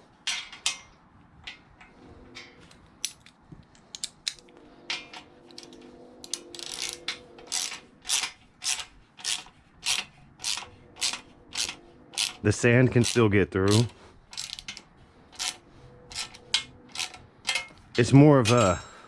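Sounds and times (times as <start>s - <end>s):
ratchet wrench clicking: 5.6s - 12.4s, 13.0s - 14.8s, 15.4s - 18.8s.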